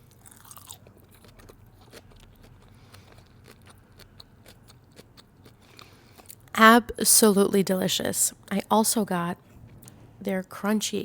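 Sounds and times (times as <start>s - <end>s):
person chewing food: 0.0s - 6.5s.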